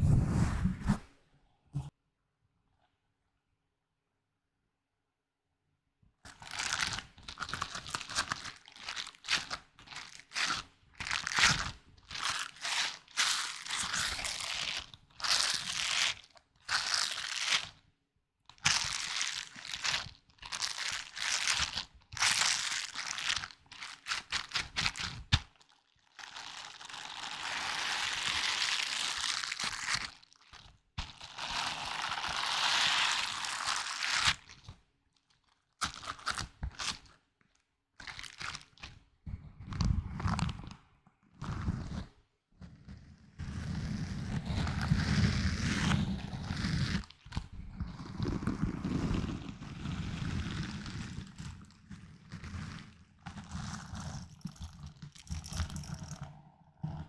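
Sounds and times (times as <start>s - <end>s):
crinkling crunching scrapes: 0.0s - 1.2s, 6.3s - 17.8s, 41.4s - 57.0s.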